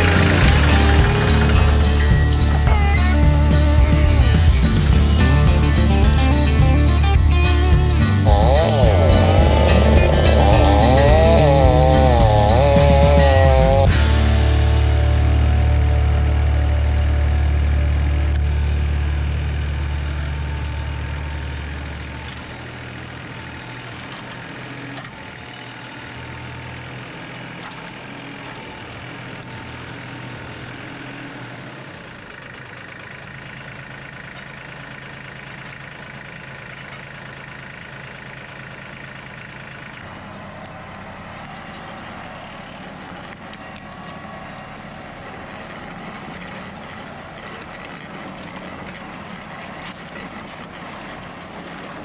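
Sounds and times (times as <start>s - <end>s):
low rumble: 0.0s - 22.5s
engine running steadily: 0.0s - 52.0s.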